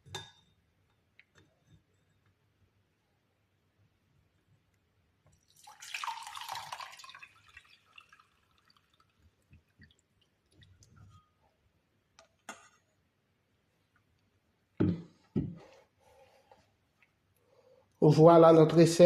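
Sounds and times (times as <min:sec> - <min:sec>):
liquid dripping: 0:05.3 - 0:11.2
liquid pouring: 0:05.4 - 0:11.0.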